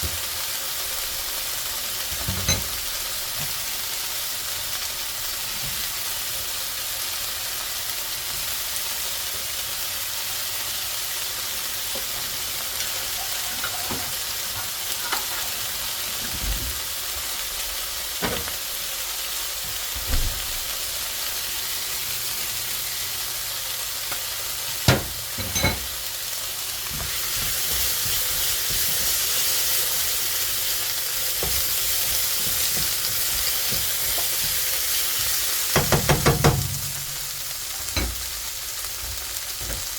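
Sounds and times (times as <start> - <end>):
rice sizzling in a pan: 0.0 - 39.9
utensil knocking against pan: 35.7 - 38.2.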